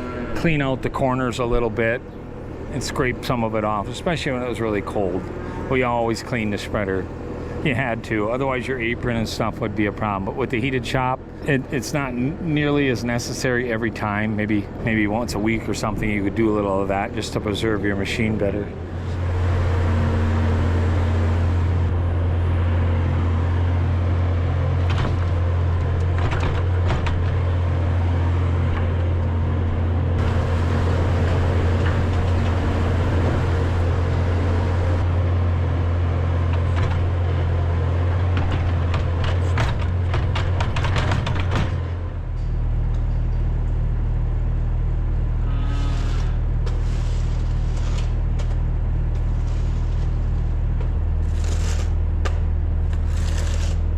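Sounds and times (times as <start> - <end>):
farm machine engine running: 0.0 - 53.9
knocks and rattles: 24.8 - 27.7, 38.2 - 43.2.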